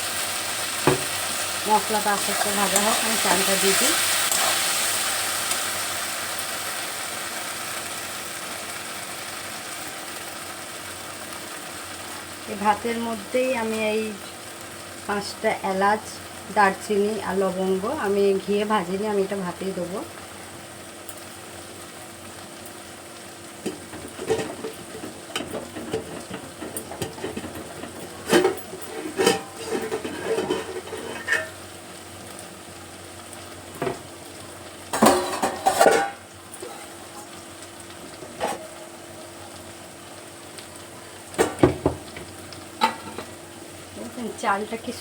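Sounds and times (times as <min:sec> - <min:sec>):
low sizzle: 0:00.0 - 0:45.0
clinks and knocks on a pan: 0:00.8 - 0:01.2, 0:23.6 - 0:31.6, 0:34.9 - 0:36.2, 0:41.4 - 0:43.3
utensil scraping a pan: 0:01.7 - 0:04.8, 0:23.7 - 0:31.6.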